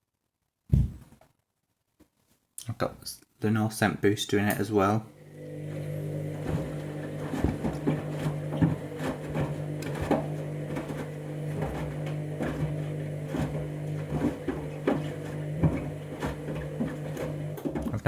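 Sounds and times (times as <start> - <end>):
washing machine motor humming: 5.0 - 18.0.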